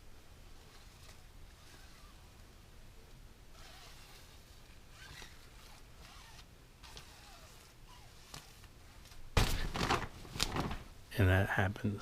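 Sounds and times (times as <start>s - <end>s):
tent fabric rustling: 0.5s - 2.4s, 3.5s - 11.0s.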